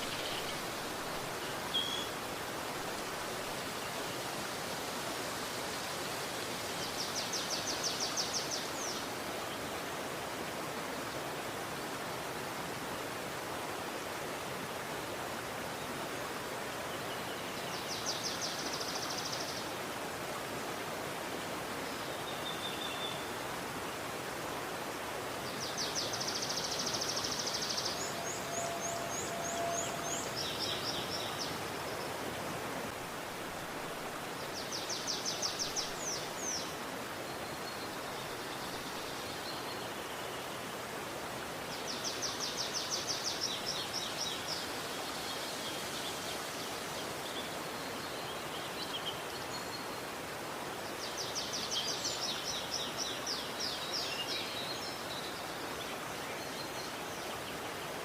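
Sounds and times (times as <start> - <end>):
river rushing: 0.0 - 58.0
songbird trilling: 1.7 - 2.1.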